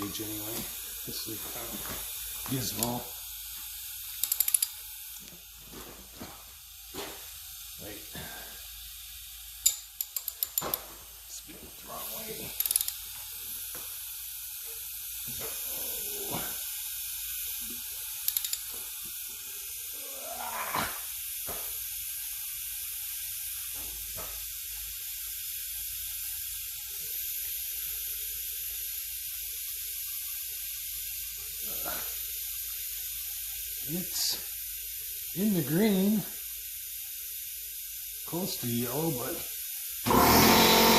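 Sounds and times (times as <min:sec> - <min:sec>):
steady high-pitched hiss: 0:00.0 - 0:40.9
tools clicking and knocking: 0:04.2 - 0:04.8, 0:09.6 - 0:11.0, 0:12.6 - 0:13.0, 0:18.2 - 0:18.8.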